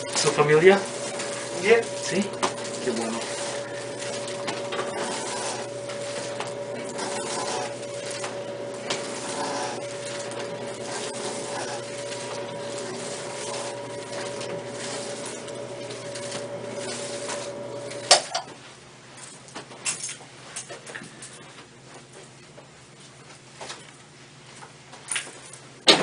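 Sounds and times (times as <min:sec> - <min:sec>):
small motor humming: 0:00.0 - 0:18.2.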